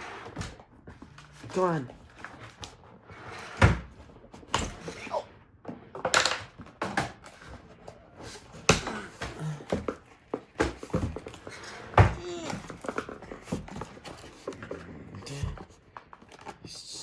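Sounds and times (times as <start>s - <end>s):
pencil knocking and scraping cardboard: 6.8s - 16.6s.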